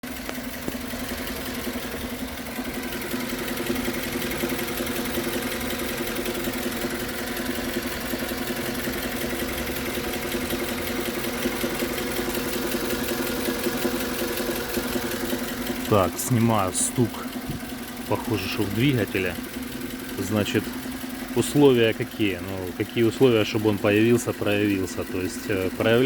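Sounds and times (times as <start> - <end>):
engine running with rapid knock: 0.0 - 26.0.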